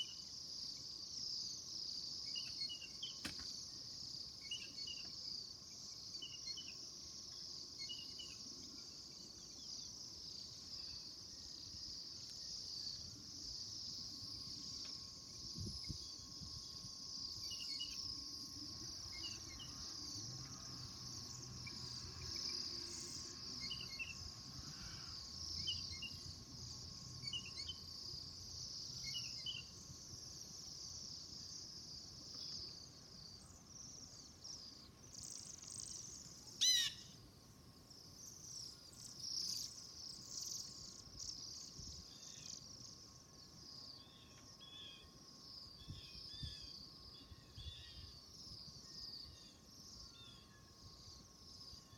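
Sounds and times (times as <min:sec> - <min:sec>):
flock of birds chirping: 0:07.4 - 0:37.3
lower bird chirps: 0:15.4 - 0:20.6, 0:32.3 - 0:37.2.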